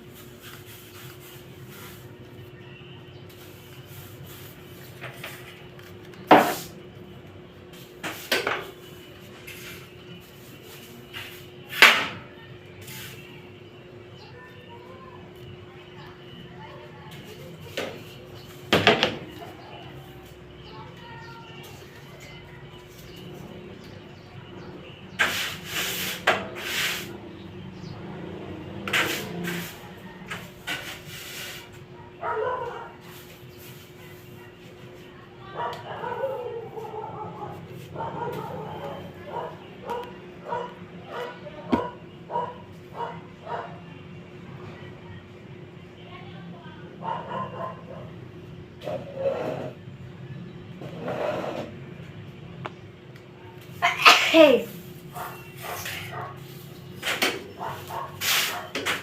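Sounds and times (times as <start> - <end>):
person sneezing: 53.8 - 54.6.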